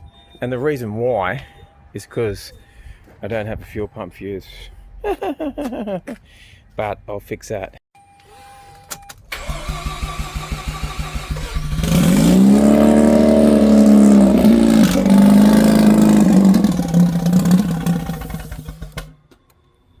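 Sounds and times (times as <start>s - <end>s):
starter cranking engine: 9.3s - 19.2s
rotary engine revving: 9.4s - 19.2s.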